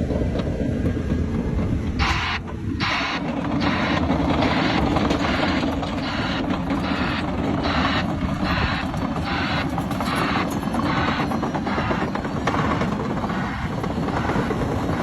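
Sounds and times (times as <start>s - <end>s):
bulldozer engine drone: 0.0s - 15.0s
rattle: 2.8s - 15.0s.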